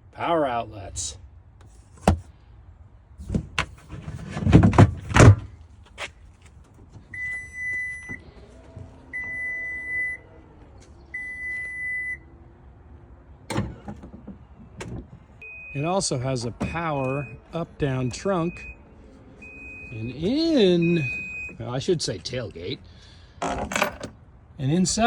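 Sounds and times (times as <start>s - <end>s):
long electronic beeps: 9.1s - 10.2s, 15.4s - 16.0s, 16.6s - 18.8s, 19.4s - 21.6s.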